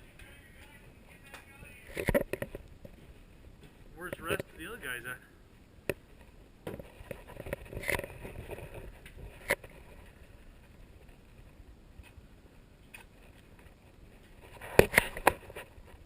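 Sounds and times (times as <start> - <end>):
camera handling rumble: 1.9 - 3.0, 6.6 - 10.2, 12.9 - 16.0.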